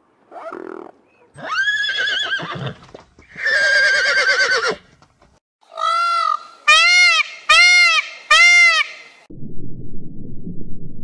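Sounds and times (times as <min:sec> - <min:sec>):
horse whinny: 0:01.4 - 0:04.8.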